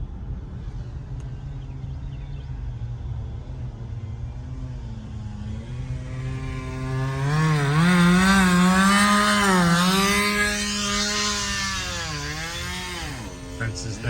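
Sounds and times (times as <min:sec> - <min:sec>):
chainsaw running at high revs: 0:04.9 - 0:14.0.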